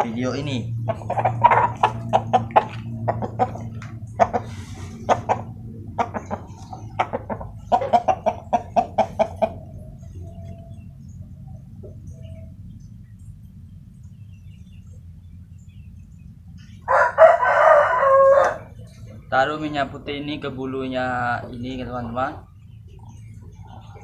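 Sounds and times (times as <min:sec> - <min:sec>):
chicken clucking: 0:00.0 - 0:12.5, 0:21.4 - 0:24.0
low steady hum: 0:00.0 - 0:24.0.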